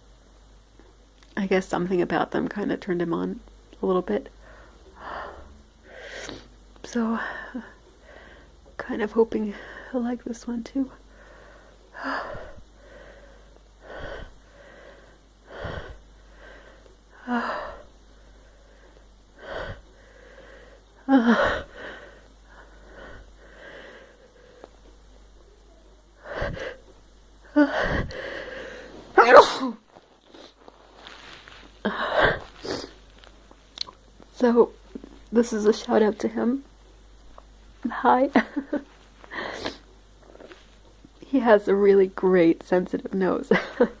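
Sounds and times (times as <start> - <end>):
gasping wheezy in-breaths: 26.2 - 26.9
woman sneezing: 29.1 - 29.8.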